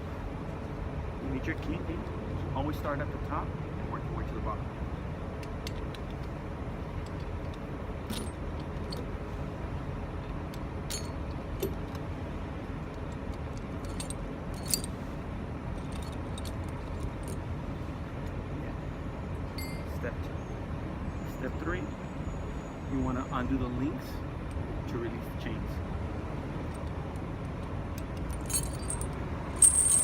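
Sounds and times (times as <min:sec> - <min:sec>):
low engine rumble: 0:00.0 - 0:30.0
metal tire chain clinking: 0:07.1 - 0:09.1, 0:10.9 - 0:11.8, 0:13.0 - 0:15.0, 0:15.7 - 0:17.4, 0:19.5 - 0:20.0, 0:27.9 - 0:30.0.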